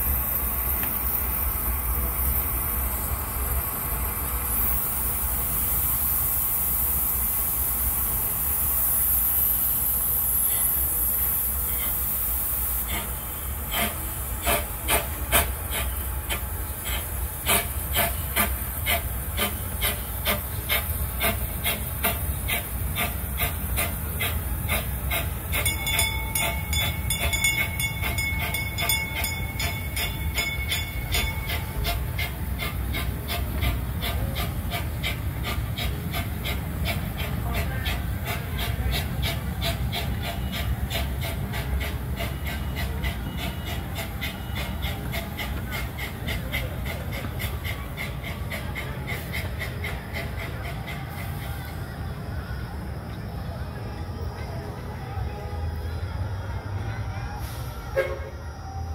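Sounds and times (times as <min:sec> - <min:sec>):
wheels clicking over rails: 0:00.0 - 0:51.7
high steady squeal: 0:00.0 - 0:58.9
locomotive rumble and hiss: 0:00.0 - 0:58.9.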